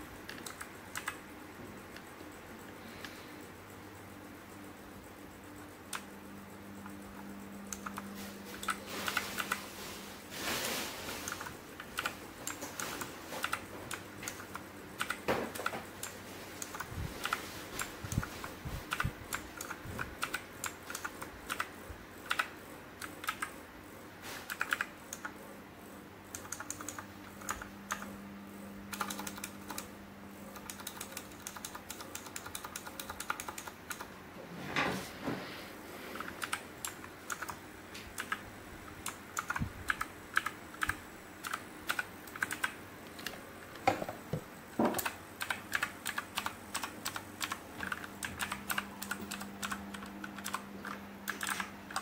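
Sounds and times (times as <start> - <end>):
mechanical keyboard typing: 0.0 - 1.3, 6.8 - 9.6, 11.2 - 23.6, 24.4 - 25.4, 26.3 - 28.1, 28.9 - 34.1, 36.2 - 43.4, 44.9 - 52.0.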